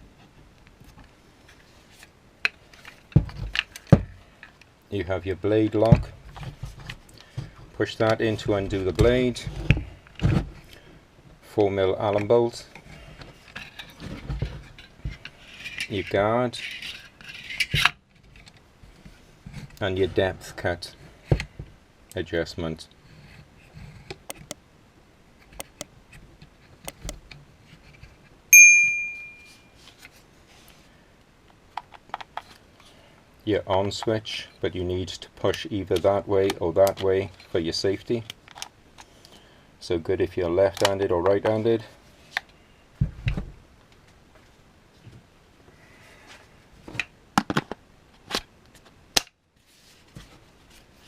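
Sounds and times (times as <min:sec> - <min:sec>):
plastic tool being handled clicks: 0:24.1 - 0:24.6, 0:25.6 - 0:25.9, 0:26.9 - 0:27.2
sharp metallic ping: 0:28.6 - 0:29.6.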